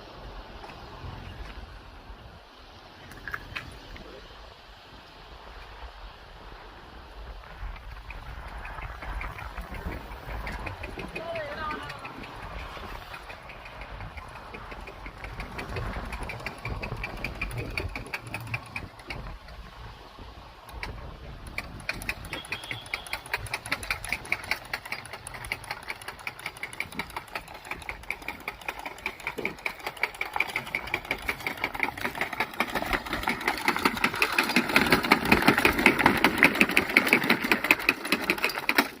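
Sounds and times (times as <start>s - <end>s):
seeder mechanism clicking: 8.4s - 19.6s, 20.7s - 39.0s.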